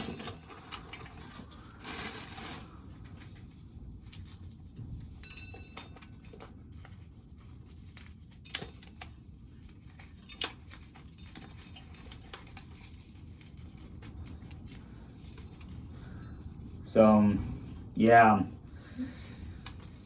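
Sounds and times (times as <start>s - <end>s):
low steady hum: 14.1s - 20.0s.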